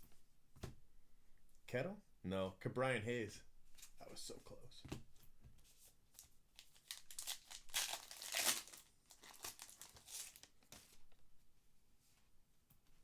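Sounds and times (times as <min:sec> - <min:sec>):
wrapper tearing and crinkling: 0:06.2 - 0:11.0.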